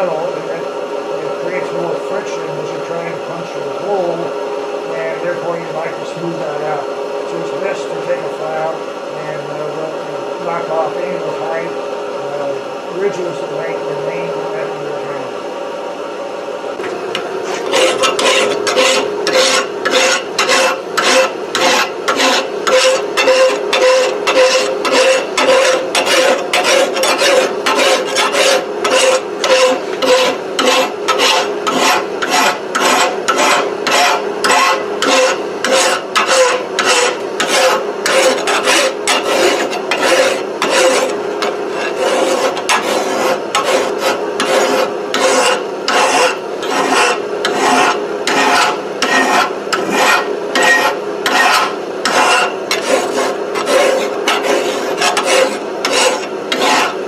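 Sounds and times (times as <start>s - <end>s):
file rasping on steel: 17.4s - 57.0s.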